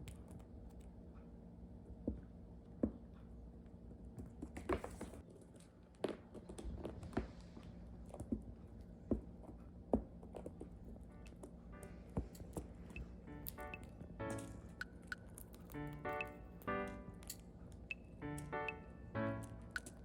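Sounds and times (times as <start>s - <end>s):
steady low hum: 7.3s - 20.0s.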